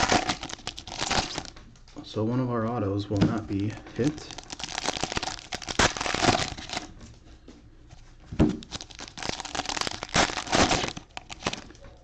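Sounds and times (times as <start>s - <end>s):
wrappers crinkling and tearing: 0.0s - 1.6s, 4.0s - 7.0s, 8.6s - 12.0s.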